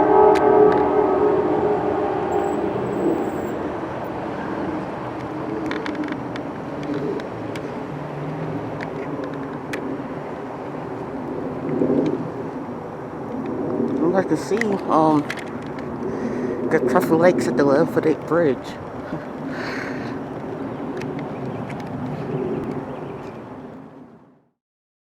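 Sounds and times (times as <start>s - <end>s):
train horn: 0.0s - 3.4s
passenger train rumbling: 0.0s - 7.5s.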